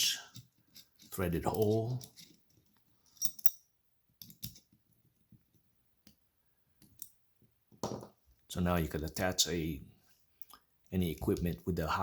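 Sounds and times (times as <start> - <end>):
metal parts clicking and tapping: 0.3 - 4.7.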